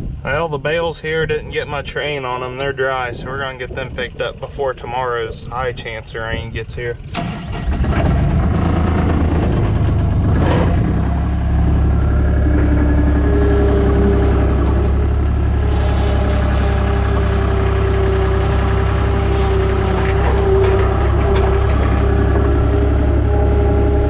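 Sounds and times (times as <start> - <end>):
farm vehicle engine running: 7.0 - 24.0.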